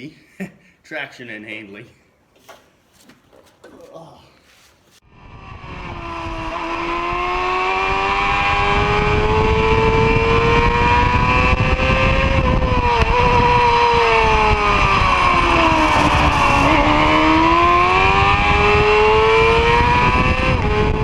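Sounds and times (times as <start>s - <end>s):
motorcycle engine high revs: 5.1s - 21.0s
steady rushing noise: 13.1s - 19.6s.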